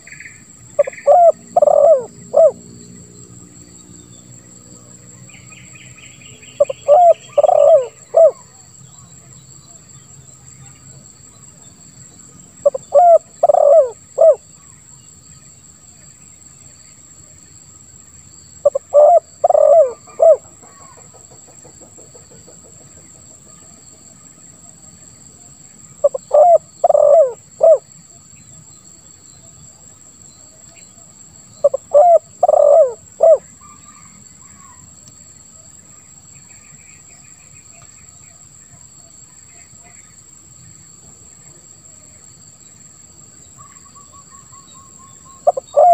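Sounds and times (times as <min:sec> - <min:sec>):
dove cooing: 0:00.0 - 0:02.6, 0:06.6 - 0:08.5, 0:12.6 - 0:14.4, 0:18.6 - 0:21.0, 0:26.0 - 0:27.9, 0:31.6 - 0:34.8, 0:45.4 - 0:45.9
high insect drone: 0:00.0 - 0:45.9.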